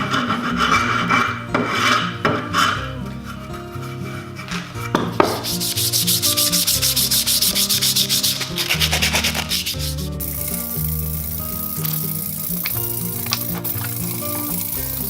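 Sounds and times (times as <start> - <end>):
background music with bass: 0.0 - 15.0
hand sanding strokes: 5.2 - 11.8.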